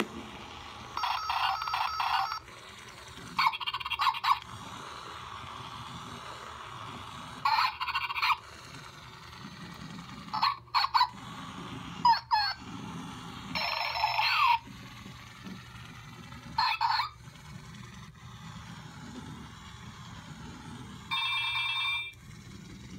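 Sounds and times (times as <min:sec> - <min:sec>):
toy electronic sound effects: 0:00.9 - 0:02.6, 0:03.4 - 0:04.7, 0:07.3 - 0:12.8, 0:13.5 - 0:15.3, 0:16.2 - 0:17.2, 0:21.1 - 0:22.2.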